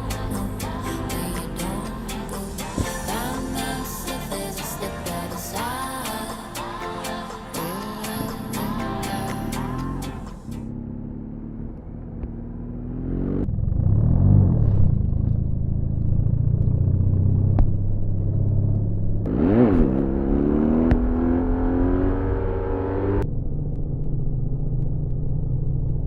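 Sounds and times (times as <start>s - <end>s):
motorcycle engine revving: 7.5s - 26.0s.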